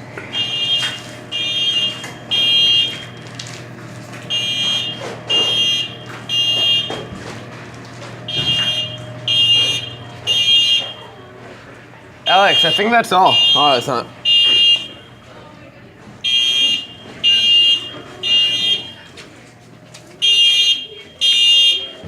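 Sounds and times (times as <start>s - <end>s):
fire alarm high-pitched beeps: 0.3s - 3.4s, 4.2s - 7.3s, 8.3s - 11.3s, 12.2s - 15.4s, 16.2s - 19.2s, 20.2s - 22.0s.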